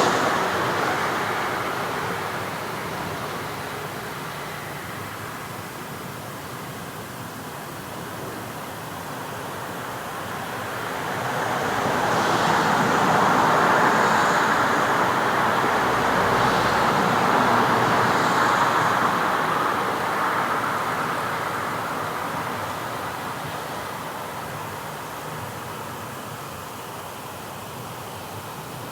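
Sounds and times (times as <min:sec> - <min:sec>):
vehicle passing close by: 0:00.0 - 0:04.9, 0:10.8 - 0:22.6
background street traffic: 0:00.0 - 0:28.9.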